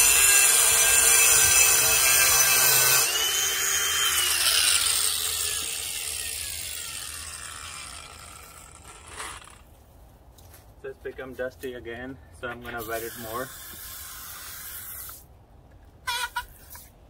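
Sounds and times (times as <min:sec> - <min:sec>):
angle grinder whining on concrete: 0:00.0 - 0:09.6
grinder blade spinning down: 0:00.0 - 0:09.6.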